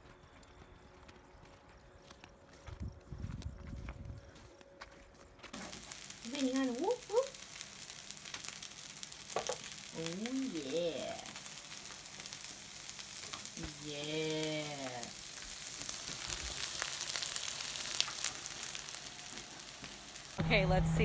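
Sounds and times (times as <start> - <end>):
crackling hiss: 5.5 - 20.4.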